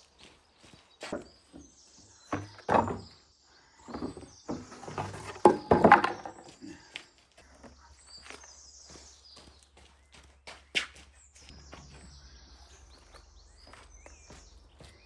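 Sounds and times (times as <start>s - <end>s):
irregular knocks and thuds: 1.1s - 3.1s, 3.9s - 6.5s.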